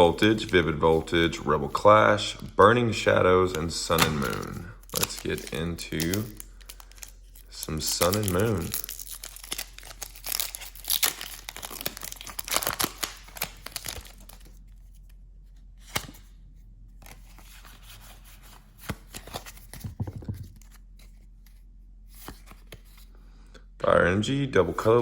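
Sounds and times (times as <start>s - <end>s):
foil wrapper tearing and crinkling: 3.9s - 14.6s.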